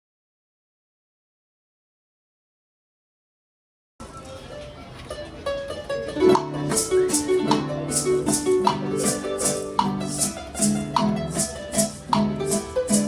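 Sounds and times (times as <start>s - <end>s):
acoustic guitar and harp: 4.0s - 13.0s
maraca rhythm: 5.8s - 13.0s.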